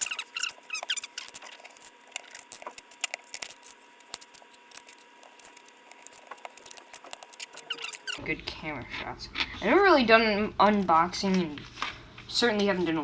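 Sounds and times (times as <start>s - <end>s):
plastic squeaks: 0.0s - 9.6s.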